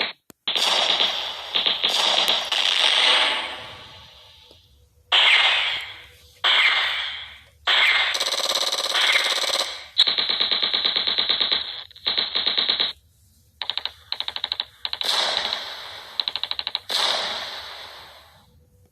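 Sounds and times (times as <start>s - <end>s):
automatic gunfire bursts: 0.0s - 3.6s, 7.7s - 13.0s, 13.6s - 18.2s.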